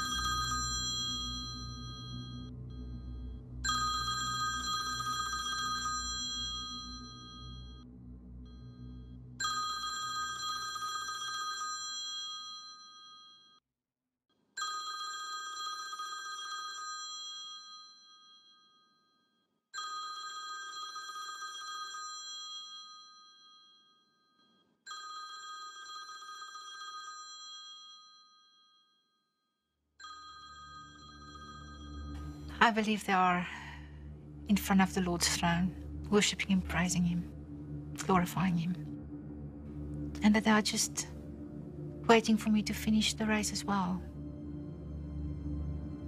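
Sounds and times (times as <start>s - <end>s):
low rumble: 0.0s - 9.9s, 31.3s - 46.0s
ringing bell-like tone: 0.0s - 13.6s, 16.3s - 19.5s, 20.5s - 24.8s, 25.4s - 37.3s.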